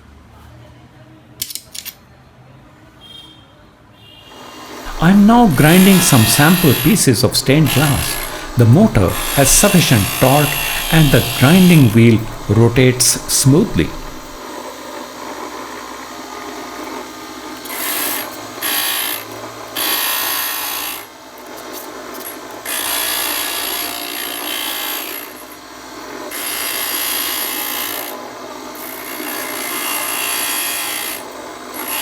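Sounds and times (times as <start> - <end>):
grinder motor and wheel hiss: 7.6 - 12.5.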